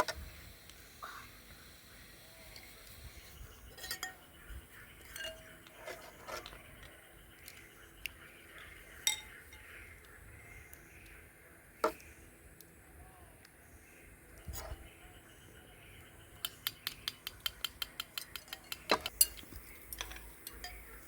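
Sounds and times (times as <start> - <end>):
spoons clinking against dishes: 3.7 - 4.3, 5.0 - 6.0, 9.0 - 9.7, 18.2 - 21.0.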